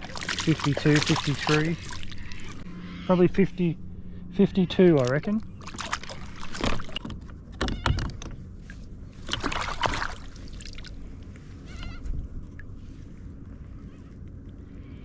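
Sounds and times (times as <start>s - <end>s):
water splashing: 0.0s - 2.7s, 5.0s - 7.1s, 9.2s - 11.0s
knocks and rustles in a kayak: 5.6s - 10.5s.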